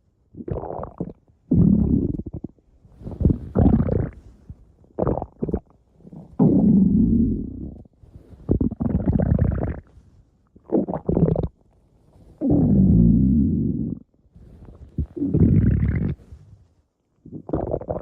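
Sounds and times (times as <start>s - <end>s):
stomach growling: 0.3s - 4.2s, 5.0s - 10.0s, 10.6s - 11.6s, 12.4s - 16.4s, 17.2s - 18.0s.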